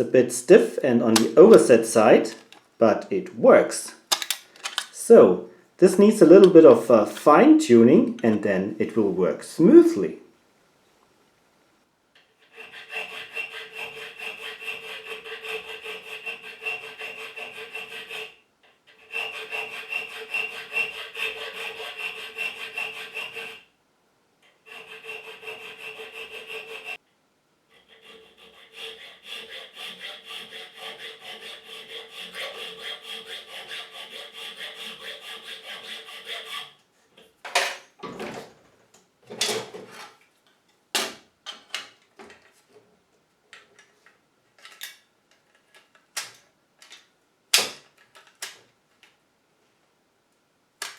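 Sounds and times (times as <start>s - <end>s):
file rasping on metal key: 12.4s - 23.7s, 24.6s - 27.0s, 27.8s - 36.8s.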